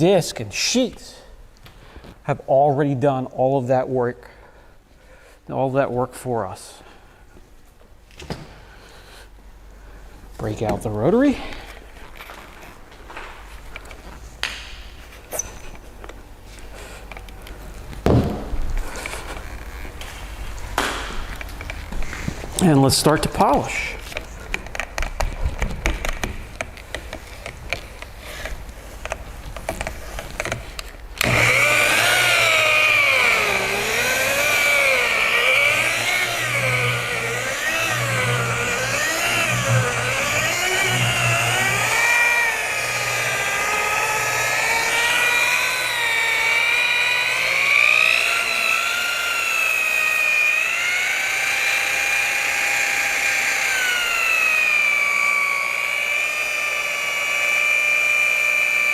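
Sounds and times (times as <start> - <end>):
rotary polisher whining: 31.2 - 58.9.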